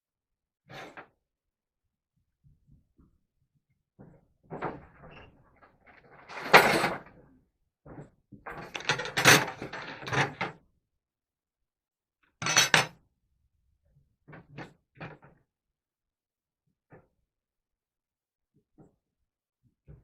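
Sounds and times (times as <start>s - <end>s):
knocks scrapes and clatter: 4.5s - 7.2s.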